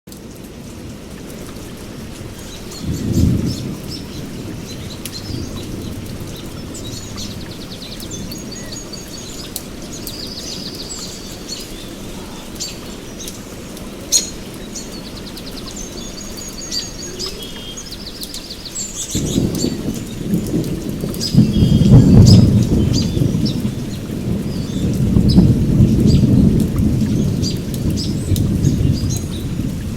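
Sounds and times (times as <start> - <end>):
rain on a tent: 0.1 - 29.9
low thunder rumbles: 1.8 - 13.3, 19.0 - 29.9
birds chirping and trilling: 2.3 - 29.7.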